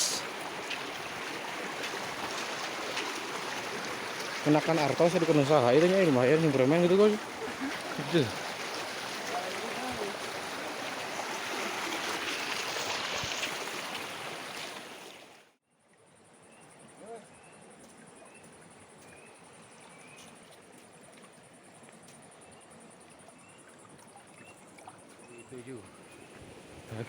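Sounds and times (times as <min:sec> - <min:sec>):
rushing stream water: 0:00.0 - 0:15.6.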